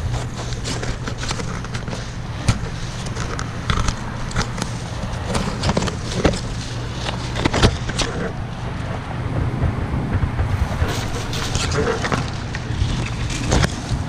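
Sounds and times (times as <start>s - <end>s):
branches snapping and crackling: 0.0s - 8.6s, 10.1s - 14.0s
low engine hum: 0.0s - 14.0s.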